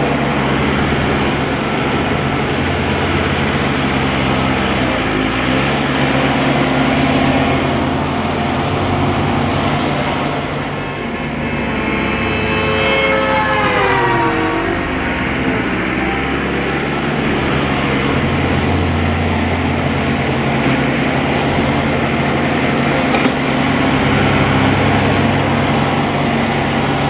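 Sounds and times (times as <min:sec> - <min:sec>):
excavator engine running: 0:00.0 - 0:26.6
whine dropping in pitch: 0:07.6 - 0:25.5.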